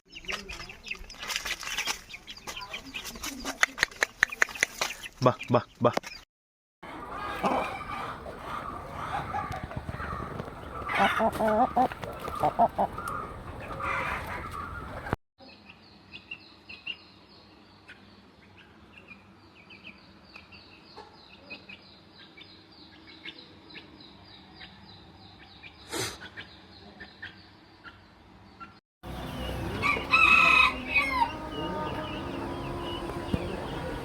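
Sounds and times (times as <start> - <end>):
chickens clucking: 6.8 - 15.2, 28.6 - 34.0.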